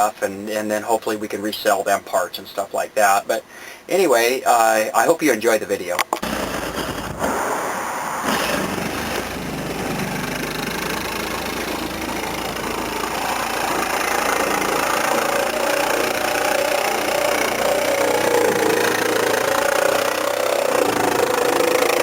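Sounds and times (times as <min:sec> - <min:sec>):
steady hum: 0:00.0 - 0:22.0
motor running: 0:06.2 - 0:07.6, 0:08.2 - 0:22.0.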